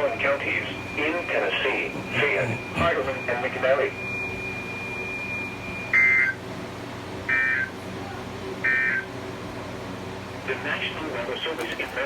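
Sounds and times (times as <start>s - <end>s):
low broadcast hum: 0.0s - 4.0s.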